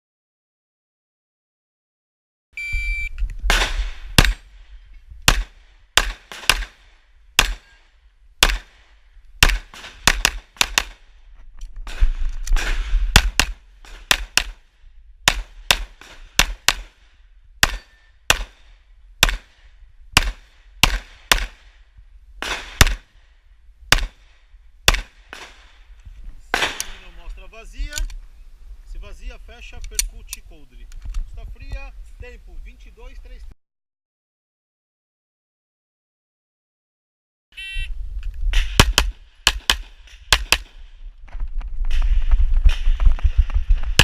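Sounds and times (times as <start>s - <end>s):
pistol shots: 3.5s - 4.5s, 5.3s - 11.1s, 12.6s - 14.6s, 15.2s - 17.0s, 17.6s - 19.6s, 20.2s - 21.8s, 22.4s - 23.1s, 23.9s - 24.3s, 24.9s - 25.7s, 26.5s - 27.1s, 38.5s - 40.8s.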